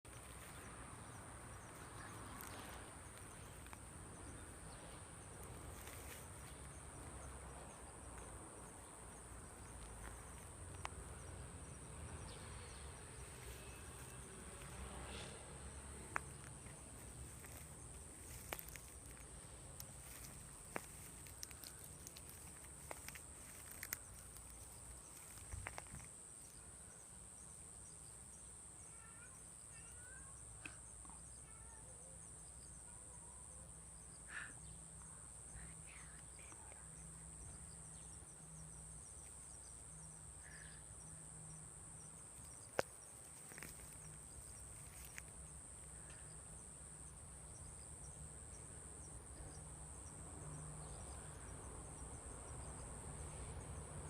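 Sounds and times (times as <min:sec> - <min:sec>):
high insect drone: 0:00.1 - 0:54.0
faint bird chirps: 0:20.0 - 0:33.4, 0:34.0 - 0:45.2.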